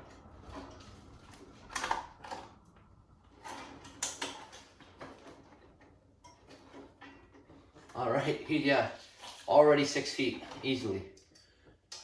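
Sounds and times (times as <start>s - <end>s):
knocks and scrapes of handling: 0.1s - 9.5s.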